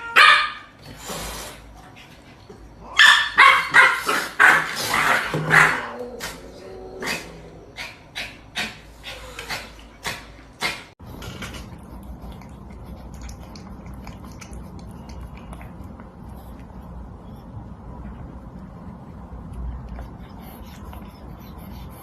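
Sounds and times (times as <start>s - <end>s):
dog barking: 0.0s - 0.7s, 2.9s - 5.9s
low steady rumble: 11.0s - 22.0s.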